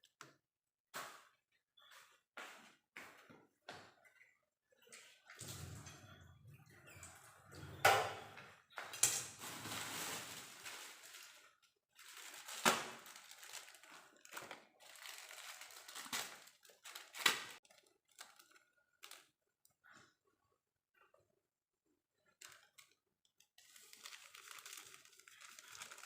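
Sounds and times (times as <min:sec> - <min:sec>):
rustling and scraping: 0:09.3 - 0:11.4.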